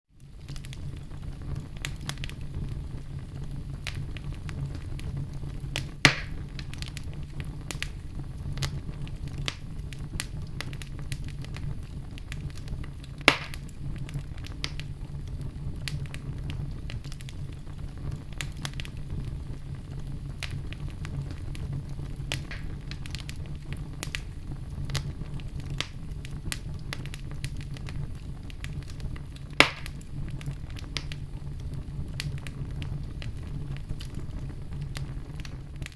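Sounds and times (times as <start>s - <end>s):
wood fire crackling: 0.1s - 35.9s
sharp pops from fire: 0.2s - 35.9s.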